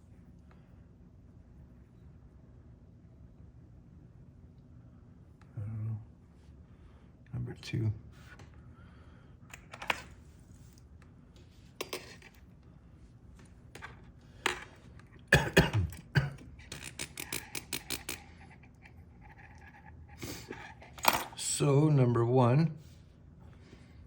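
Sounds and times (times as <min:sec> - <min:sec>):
clatter of metal parts: 0:16.6 - 0:18.2.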